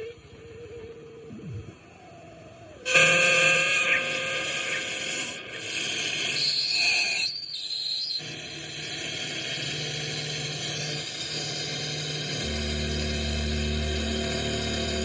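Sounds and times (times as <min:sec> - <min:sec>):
synthesizer noise texture: 0:12.2 - 0:15.0.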